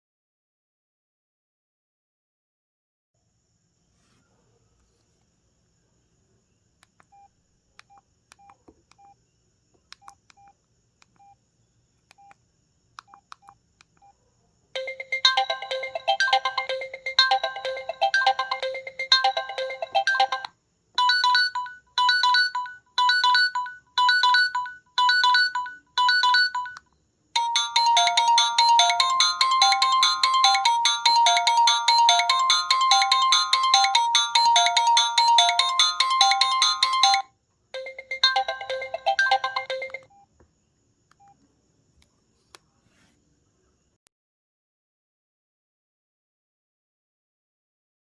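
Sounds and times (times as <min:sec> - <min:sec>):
phone melodic alarm tones: 0:14.8 - 0:26.8, 0:27.4 - 0:40.1.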